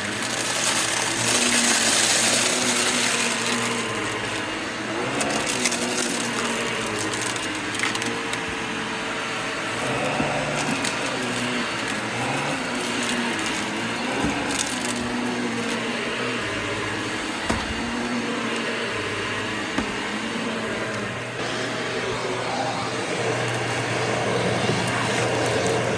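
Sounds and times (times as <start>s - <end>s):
vacuum cleaner motor hum: 0.0s - 25.9s
debris crackling up nozzle: 9.8s - 22.6s.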